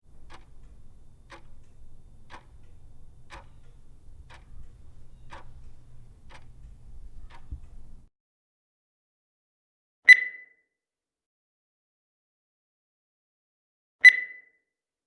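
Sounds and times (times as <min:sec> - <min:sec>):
clock-like ticking: 0:00.0 - 0:08.1.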